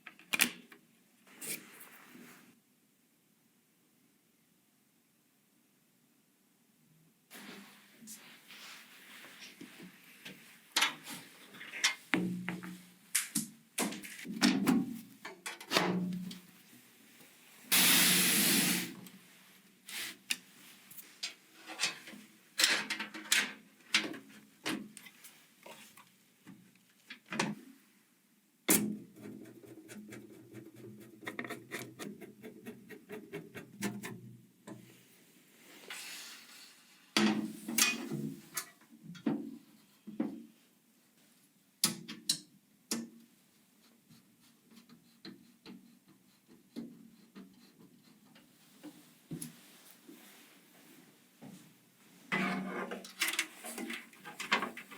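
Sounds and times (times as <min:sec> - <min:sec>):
short hiss: 0:17.6 - 0:19.0, 0:19.9 - 0:20.4, 0:35.7 - 0:36.8.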